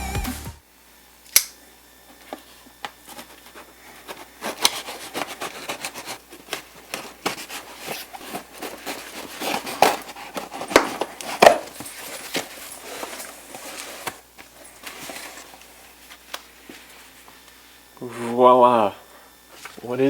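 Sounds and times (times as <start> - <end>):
packaging rustling and scraping: 2.2 - 17.3.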